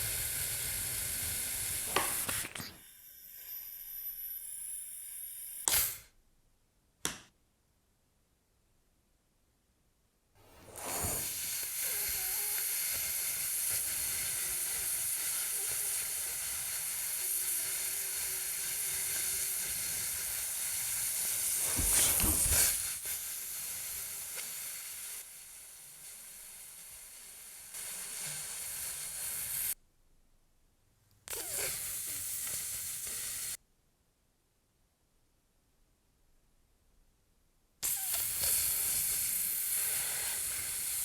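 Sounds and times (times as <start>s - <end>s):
steady hiss: 0.0s - 6.1s, 10.4s - 29.8s, 37.8s - 41.0s.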